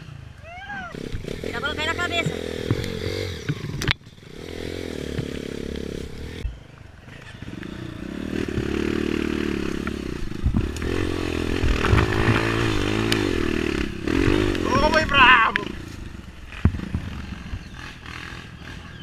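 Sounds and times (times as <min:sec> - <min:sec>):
motorcycle engine revving unevenly: 0:00.9 - 0:19.0.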